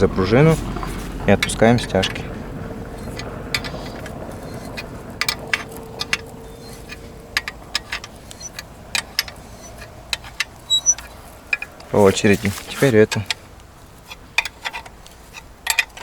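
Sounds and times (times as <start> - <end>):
faint steady hum: 0.0 - 15.9
wrench clicking: 2.9 - 13.4, 14.1 - 16.0.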